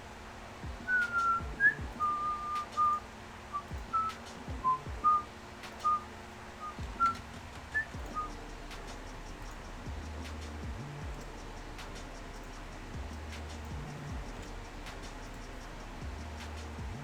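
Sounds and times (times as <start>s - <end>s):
person whistling a tune: 0.9s - 8.4s.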